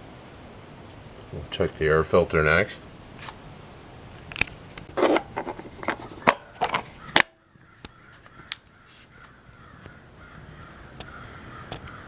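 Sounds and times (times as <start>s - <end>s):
plastic cover clicks and scrapes: 4.3s - 7.3s.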